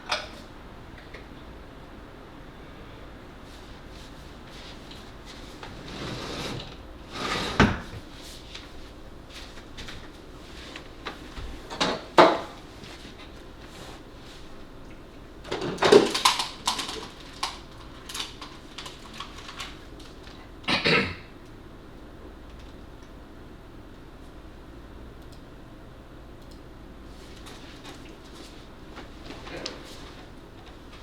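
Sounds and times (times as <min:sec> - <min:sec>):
objects knocking and clattering: 0:15.5 - 0:19.6.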